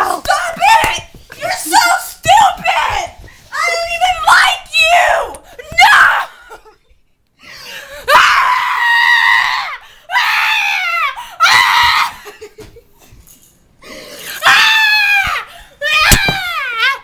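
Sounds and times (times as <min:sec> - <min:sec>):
girl screaming: 0:14.4 - 0:17.0.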